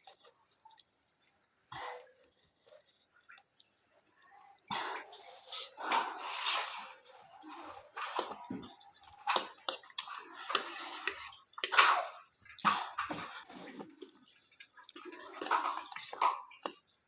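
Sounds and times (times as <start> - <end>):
slurping noodles: 5.0 - 17.0.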